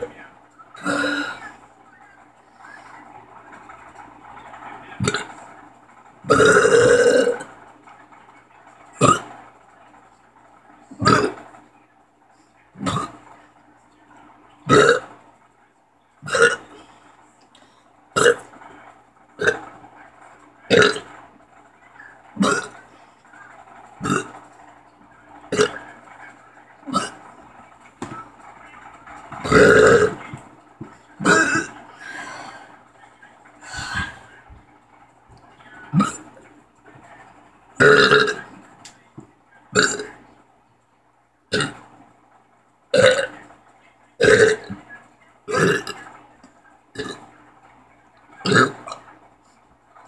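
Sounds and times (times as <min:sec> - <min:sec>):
boy burping: 0:00.8 - 0:01.5, 0:06.3 - 0:07.4, 0:14.7 - 0:15.1, 0:16.2 - 0:16.6, 0:29.4 - 0:30.2, 0:31.2 - 0:31.8, 0:39.8 - 0:40.1, 0:44.2 - 0:44.6
person burping loudly: 0:00.8 - 0:01.5, 0:06.3 - 0:07.5, 0:09.0 - 0:09.3, 0:11.0 - 0:11.4, 0:12.8 - 0:13.2, 0:14.7 - 0:15.1, 0:16.2 - 0:16.8, 0:18.2 - 0:18.5, 0:19.4 - 0:19.6, 0:20.7 - 0:21.1, 0:22.4 - 0:22.8, 0:24.0 - 0:24.4, 0:25.5 - 0:25.8, 0:26.9 - 0:27.2, 0:29.4 - 0:30.2, 0:31.2 - 0:32.6, 0:35.9 - 0:36.3, 0:37.8 - 0:38.5, 0:39.8 - 0:40.2, 0:41.5 - 0:41.8, 0:42.9 - 0:43.3, 0:44.2 - 0:44.8, 0:45.5 - 0:46.0, 0:47.0 - 0:47.2, 0:48.4 - 0:49.0.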